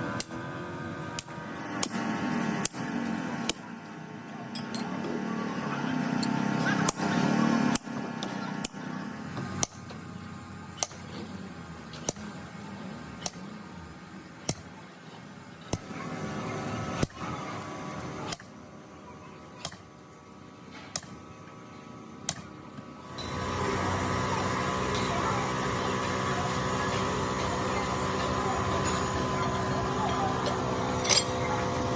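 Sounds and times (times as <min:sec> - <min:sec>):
loud mechanical noise: 0:00.0 - 0:31.9
steady hum: 0:07.6 - 0:31.9.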